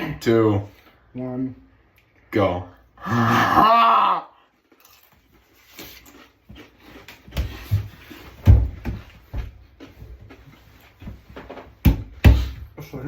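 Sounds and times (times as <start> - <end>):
chip crunching while chewed: 4.7 - 7.1.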